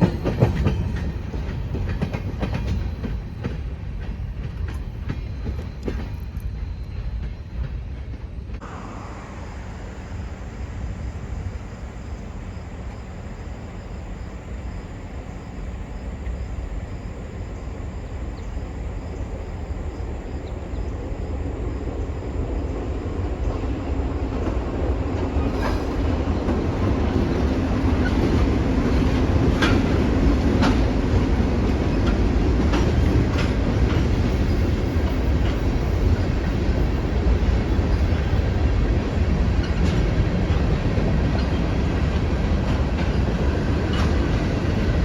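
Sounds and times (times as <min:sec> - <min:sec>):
wheels clicking over rail joints: 0:00.0 - 0:08.7, 0:23.4 - 0:45.0
diesel locomotive engine rumble: 0:00.0 - 0:45.0.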